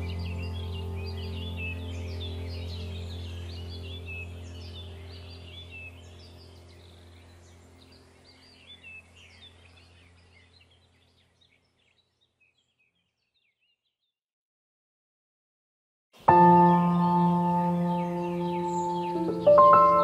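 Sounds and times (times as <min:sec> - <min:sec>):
steady low hum: 0:00.0 - 0:11.0
finches twittering: 0:00.0 - 0:13.6, 0:16.5 - 0:20.0.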